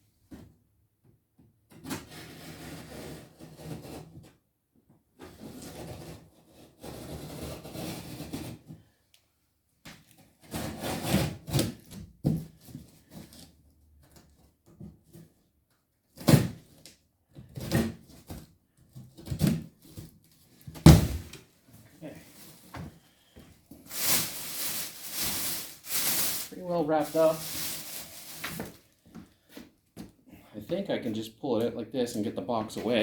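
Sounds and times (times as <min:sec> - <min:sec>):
cardboard box being cut and torn: 0:20.9 - 0:21.4.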